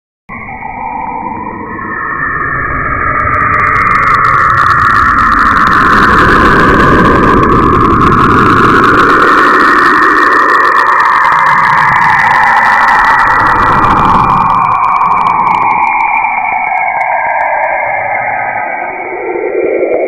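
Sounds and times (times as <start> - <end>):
low rumble: 0.3 - 9.9.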